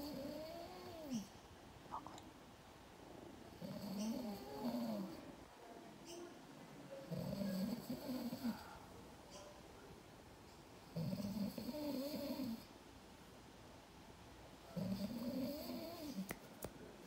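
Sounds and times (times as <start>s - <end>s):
man snoring: 7.1s - 8.6s, 14.8s - 16.2s.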